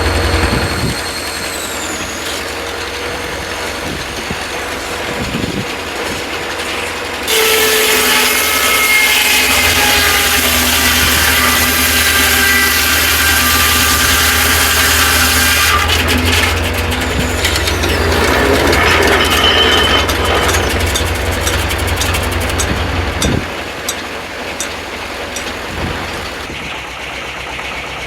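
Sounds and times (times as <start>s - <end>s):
saw blade cutting log: 0.0s - 26.6s
engine drone: 0.0s - 28.0s
sharp clicks and rattles: 15.8s - 27.8s.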